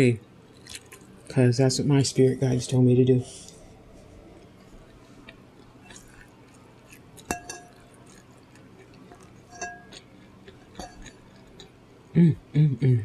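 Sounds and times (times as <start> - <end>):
hard objects clinking: 6.9 - 11.7.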